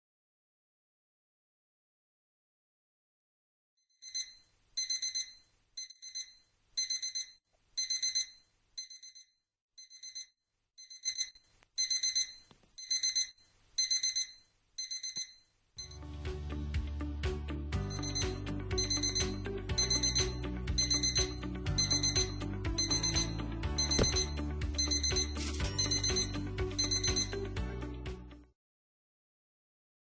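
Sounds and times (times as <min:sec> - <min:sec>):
electronic alarm clock beeping: 0:04.0 - 0:16.1, 0:17.8 - 0:27.6.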